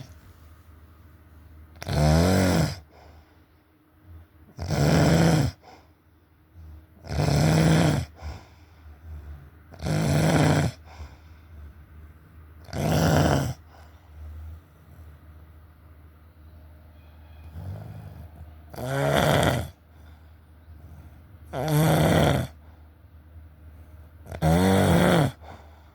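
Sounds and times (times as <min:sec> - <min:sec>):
loud snoring: 0:01.8 - 0:03.0, 0:04.5 - 0:05.8, 0:07.0 - 0:08.5, 0:09.3 - 0:11.0, 0:12.6 - 0:13.9, 0:17.4 - 0:19.8, 0:21.5 - 0:22.7, 0:24.2 - 0:25.7
quiet breathing: 0:02.8 - 0:04.4, 0:05.6 - 0:07.0, 0:08.1 - 0:09.8, 0:10.8 - 0:12.6, 0:13.6 - 0:15.5, 0:19.7 - 0:21.5, 0:22.5 - 0:24.3, 0:25.4 - 0:25.9.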